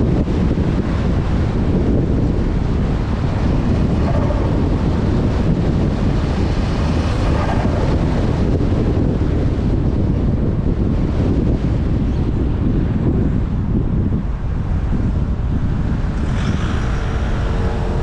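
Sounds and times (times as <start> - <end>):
car engine and road noise: 0.0 - 18.0
wind noise on microphone: 0.0 - 18.0.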